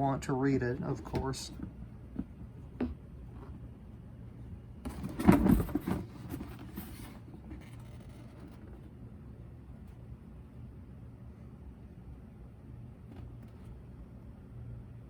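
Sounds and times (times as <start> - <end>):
faint room hum: 0.0 - 15.0
cardboard rustling and knocking: 0.6 - 3.7, 4.8 - 8.7.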